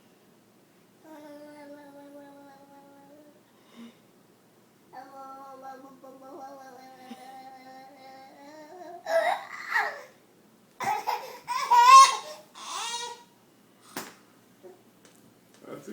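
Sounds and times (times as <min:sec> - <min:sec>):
baby laughing and babbling: 0:05.0 - 0:10.2, 0:10.8 - 0:13.2.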